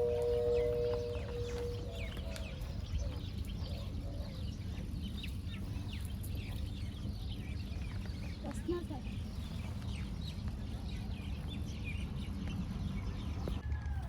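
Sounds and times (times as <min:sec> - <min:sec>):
held musical notes: 0:00.0 - 0:02.3
low rumble: 0:00.0 - 0:02.4
birds chirping: 0:00.0 - 0:12.3.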